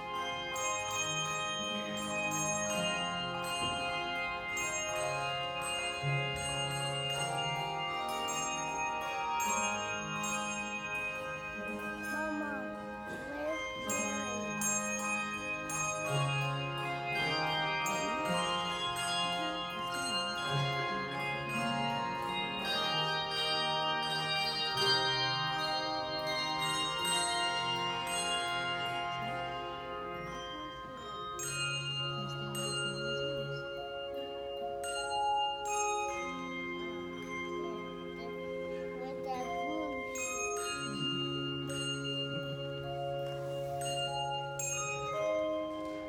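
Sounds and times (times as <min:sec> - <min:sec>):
handbell choir ringing chords: 0:00.0 - 0:46.0.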